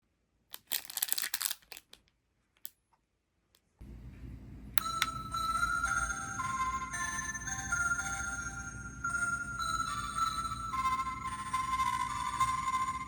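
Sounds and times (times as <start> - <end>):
electronic train chime melody: 4.8 - 13.0.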